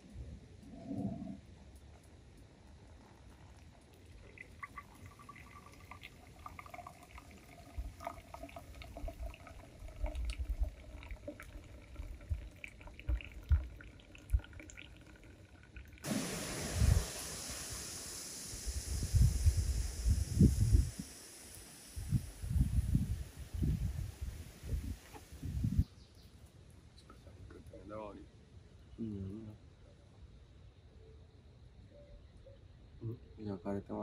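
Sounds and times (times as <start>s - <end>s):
steady hiss: 0.0s - 14.5s, 16.0s - 26.3s
liquid pouring: 2.8s - 25.7s.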